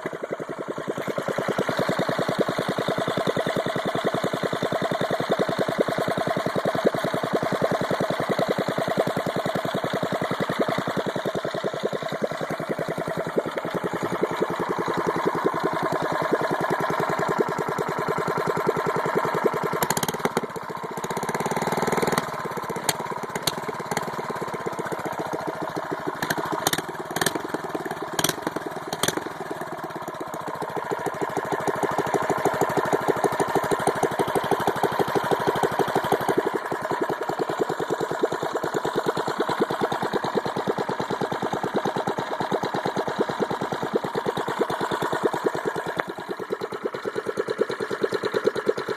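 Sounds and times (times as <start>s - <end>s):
single-cylinder engine running: 0.0s - 48.9s
sharp clicks: 26.2s - 27.6s, 28.2s - 29.3s.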